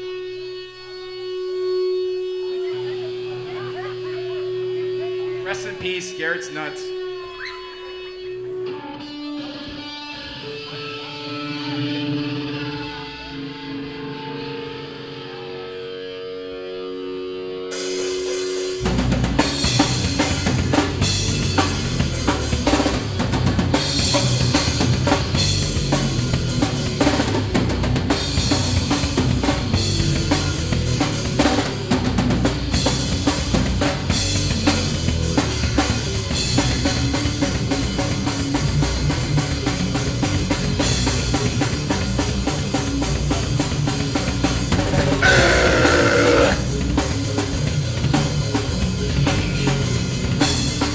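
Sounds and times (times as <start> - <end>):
live band playing loud music: 17.7 - 50.9.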